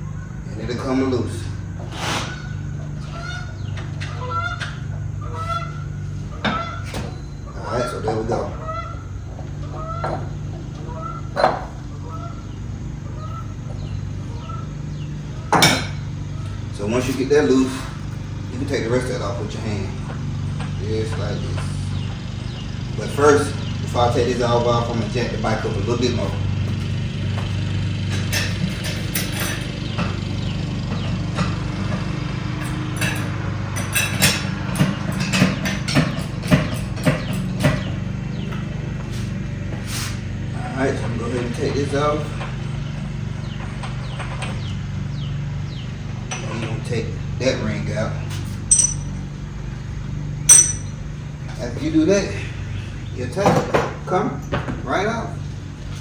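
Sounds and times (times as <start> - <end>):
bird calling: 0.0 - 16.7
steady low hum: 0.0 - 27.2.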